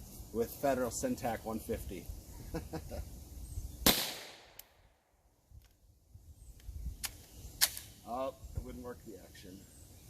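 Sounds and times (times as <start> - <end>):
pistol shot with echo: 3.8 - 4.6.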